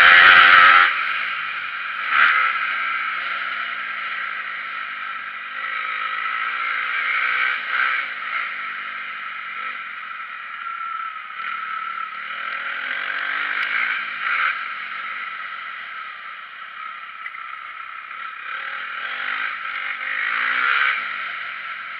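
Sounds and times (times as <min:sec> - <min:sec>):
motocross bike engine revving: 0:00.0 - 0:21.9.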